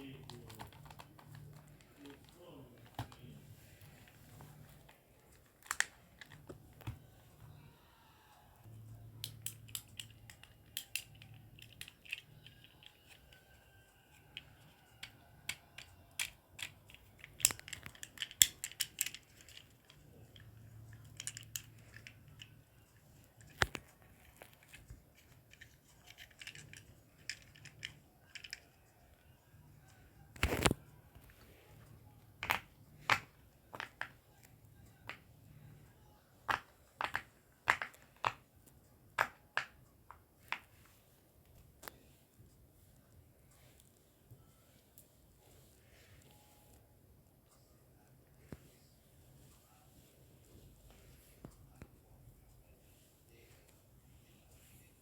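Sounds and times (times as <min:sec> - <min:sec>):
plastic fidget toys clicking: 0:00.0 - 0:02.2, 0:09.2 - 0:22.6, 0:23.2 - 0:29.2.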